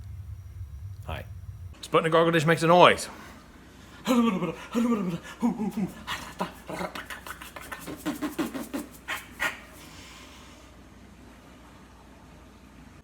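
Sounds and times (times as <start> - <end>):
person imitating dog panting: 4.0 - 10.0
person yelping: 4.1 - 9.7.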